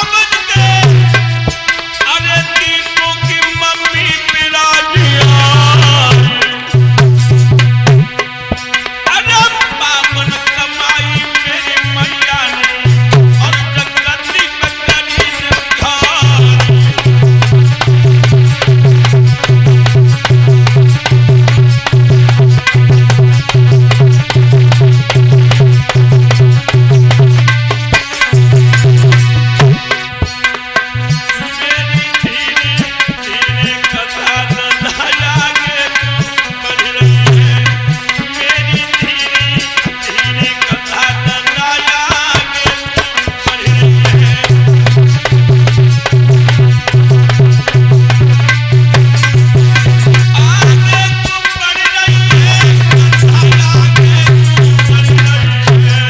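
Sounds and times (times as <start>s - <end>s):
hand drums: 0.0s - 56.0s
wavering lead melody: 0.0s - 56.0s
sustained chords: 16.1s - 31.6s, 43.6s - 51.4s.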